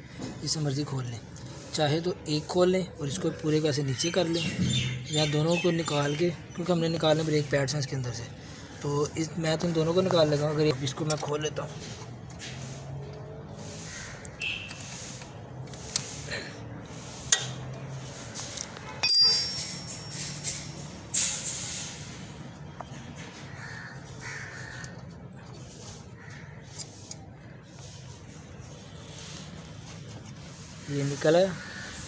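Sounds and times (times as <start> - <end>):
metal clicks and clinks: 19.0 - 20.7
loud metallic clank: 19.0 - 21.8.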